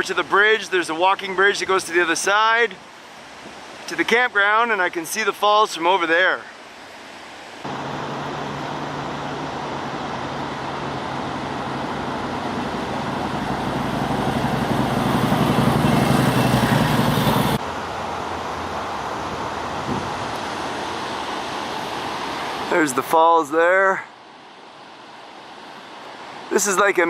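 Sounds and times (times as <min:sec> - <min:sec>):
continuous rushing roar: 0:00.0 - 0:27.0
vehicle engine humming: 0:07.7 - 0:22.6.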